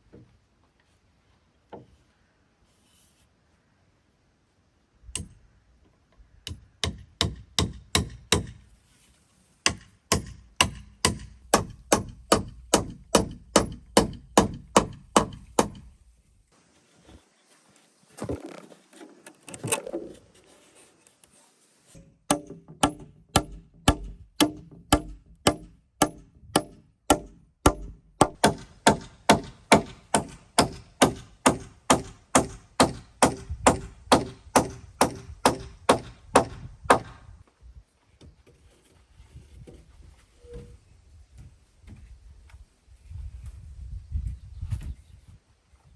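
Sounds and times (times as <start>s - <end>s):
tool striking wood: 6.5s - 8.6s, 9.7s - 15.9s, 22.3s - 37.2s.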